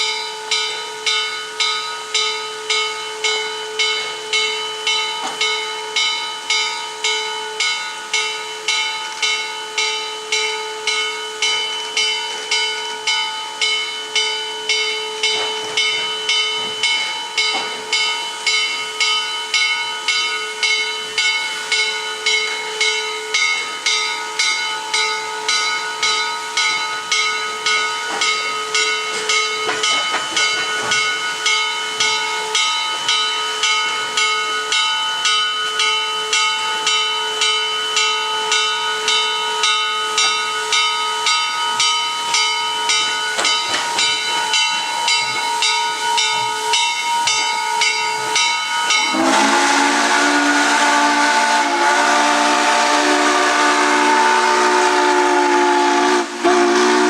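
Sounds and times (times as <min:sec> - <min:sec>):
locomotive bell ringing: 0:00.0 - 0:57.0
steam hiss: 0:00.0 - 0:57.0
steam whistle blowing: 0:36.8 - 0:57.0.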